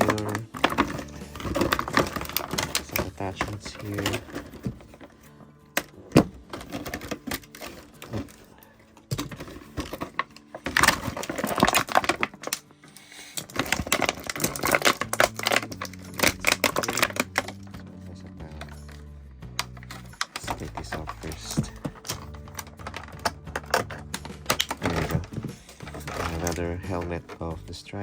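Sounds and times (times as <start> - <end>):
plastic packaging clicks and taps: 0.0 - 5.1, 9.0 - 12.6, 13.4 - 17.8, 19.6 - 27.6
plastic crinkling and rattling: 0.0 - 27.8.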